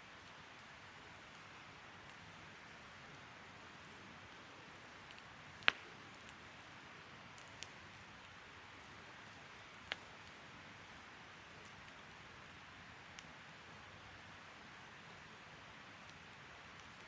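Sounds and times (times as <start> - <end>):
burning wood popping: 5.1 - 6.4.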